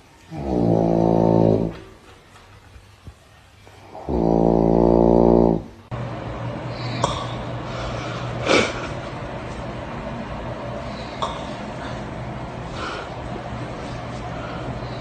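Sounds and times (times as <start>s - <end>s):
loud low snore: 0.3s - 1.8s, 3.9s - 5.8s.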